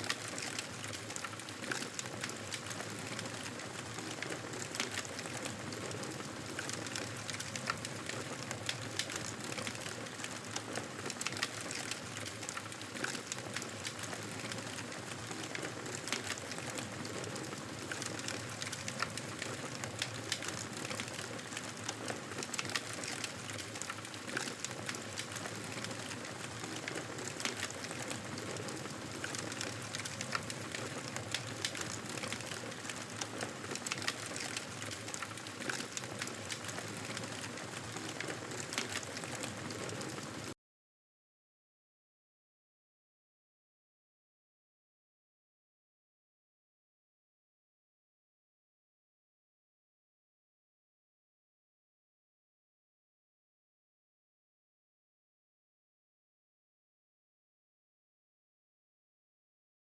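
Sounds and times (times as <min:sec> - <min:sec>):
wood fire crackling and popping: 0:00.0 - 0:40.6.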